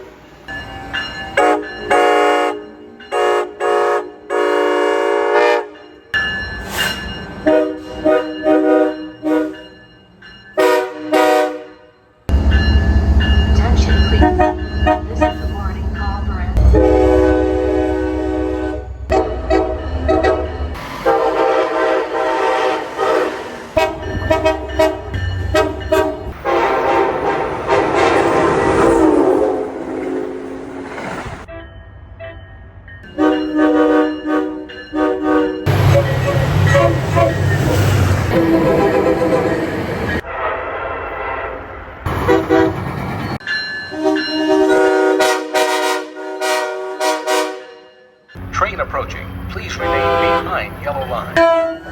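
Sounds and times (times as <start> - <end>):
train air horn blasts: 1.4 - 5.8, 7.4 - 9.6, 10.6 - 11.9, 14.2 - 15.5, 16.5 - 28.5, 33.2 - 37.5, 38.3 - 39.7, 40.3 - 42.8, 43.9 - 47.9, 49.7 - 50.8, 51.4 - 51.9.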